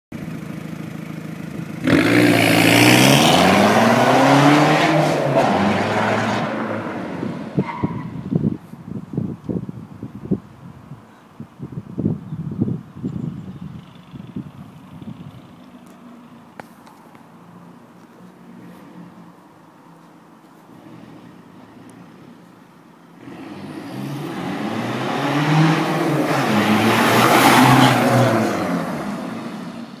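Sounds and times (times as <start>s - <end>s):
diesel engine idling and revving: 0.1s - 7.8s
diesel engine revving: 1.7s - 7.3s, 23.2s - 29.9s.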